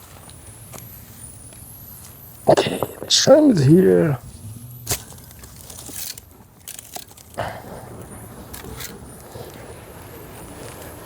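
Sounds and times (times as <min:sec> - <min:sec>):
low outdoor rumble: 0:02.6 - 0:11.0.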